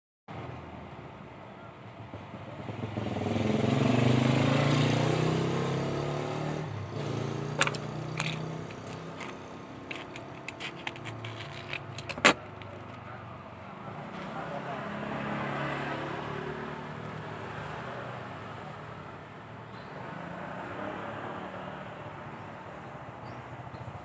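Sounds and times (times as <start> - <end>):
passing vehicle engine: 2.4 - 19.1
packaging clicks and taps: 7.6 - 13.0.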